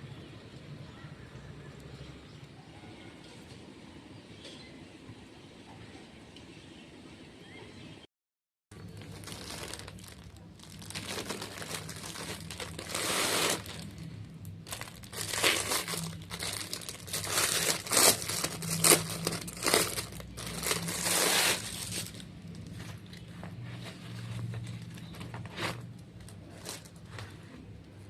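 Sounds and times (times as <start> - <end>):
packaging crinkling and rustling: 8.8 - 27.7.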